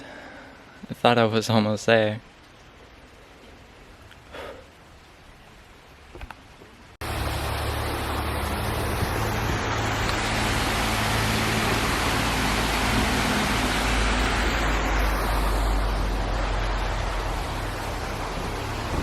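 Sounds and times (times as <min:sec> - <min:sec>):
tyre and road noise: 0:06.1 - 0:19.0
vehicle engine hum: 0:07.0 - 0:19.0.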